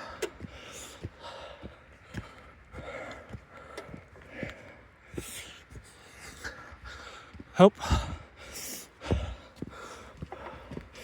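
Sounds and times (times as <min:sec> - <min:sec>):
person breathing hard: 0:00.0 - 0:11.0
soft footsteps on trail: 0:00.0 - 0:11.0.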